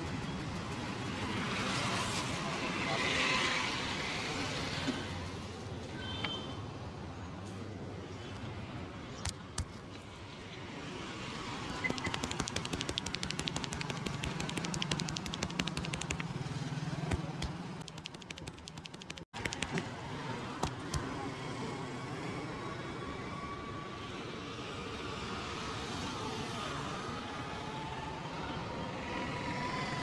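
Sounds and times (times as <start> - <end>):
street traffic hum: 0.0 - 30.0
hands tapping massage slaps: 11.9 - 16.3, 17.1 - 19.8.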